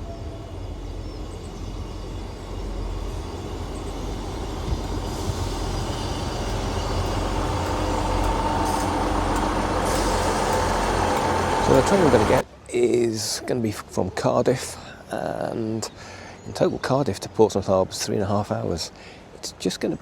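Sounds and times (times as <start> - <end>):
train whining tone: 0.0 - 12.4
train rumbling: 0.0 - 12.5.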